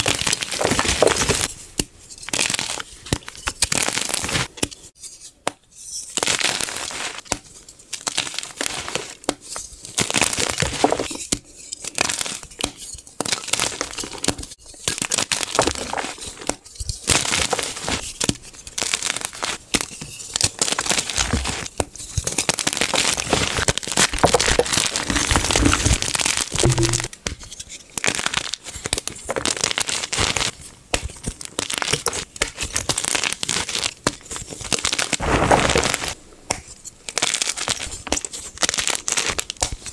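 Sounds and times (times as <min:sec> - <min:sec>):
chalk crunching by hand: 0:35.2 - 0:36.2.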